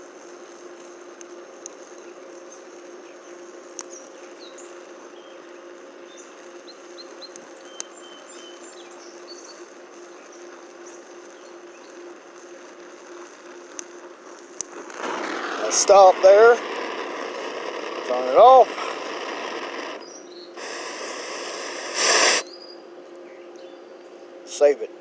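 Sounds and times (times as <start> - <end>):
welding torch flame hissing: 0.0 - 22.5
torch sharp pops: 12.3 - 22.4.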